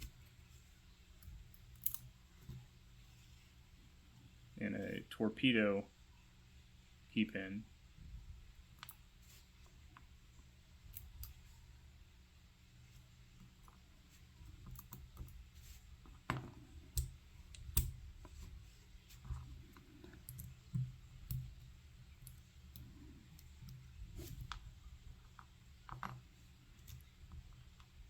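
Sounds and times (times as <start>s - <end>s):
small metal clicks and taps: 1.6s - 2.6s, 16.2s - 18.0s, 19.2s - 23.8s.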